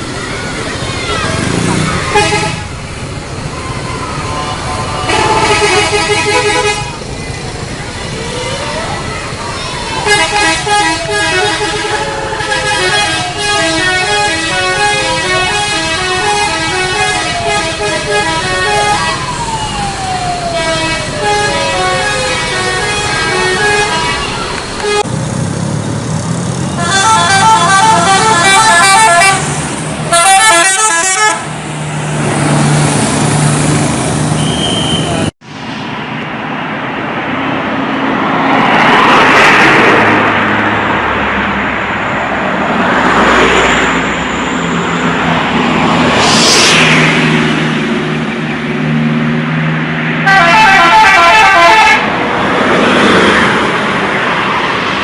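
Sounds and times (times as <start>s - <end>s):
bus engine: 0.0s - 55.0s
street noise: 0.0s - 55.0s
multi-tone bus horns: 1.3s - 2.8s, 4.2s - 7.0s, 9.7s - 19.4s, 20.0s - 25.1s, 26.7s - 31.6s, 50.2s - 53.4s.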